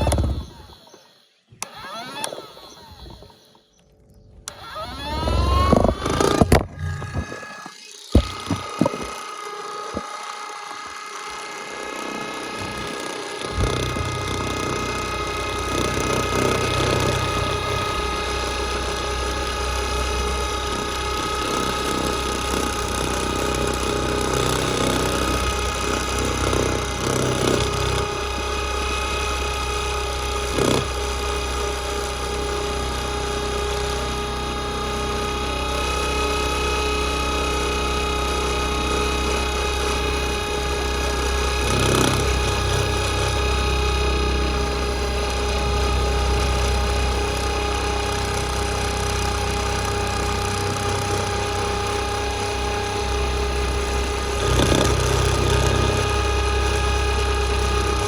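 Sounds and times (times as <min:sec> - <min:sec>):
toy motor whining: 0:00.0 - 0:58.0.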